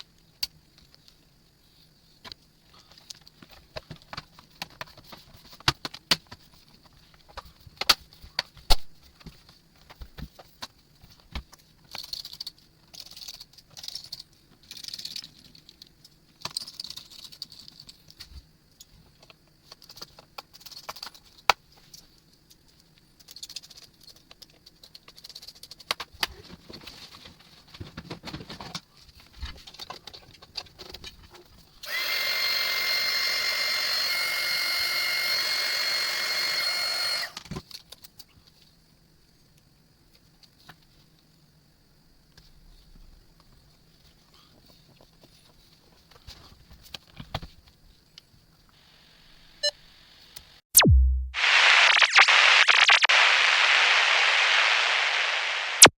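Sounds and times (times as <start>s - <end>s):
small electric motor whining: 31.8s - 37.4s.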